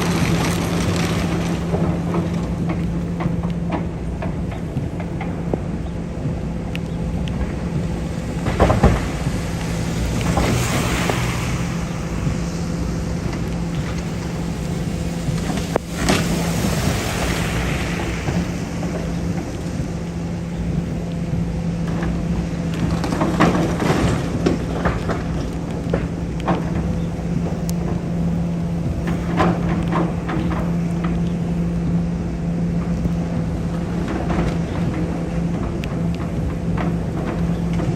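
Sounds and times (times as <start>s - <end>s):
debris crashing and crumbling: 0.0s - 4.4s, 7.4s - 21.1s, 21.8s - 28.3s
debris crunching: 0.0s - 5.5s
demolition machine engine: 0.0s - 37.9s.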